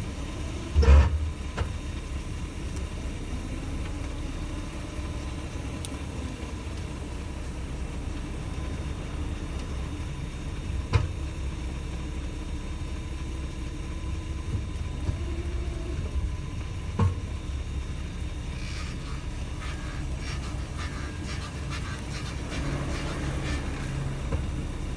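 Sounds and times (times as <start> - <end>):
car engine and road rumble: 0.0 - 24.9
rapid clicks and rattles: 18.5 - 24.2.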